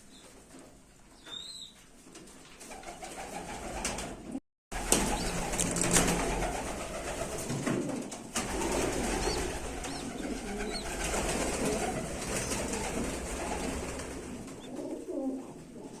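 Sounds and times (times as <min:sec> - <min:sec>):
pigeons cooing: 0:04.8 - 0:16.0.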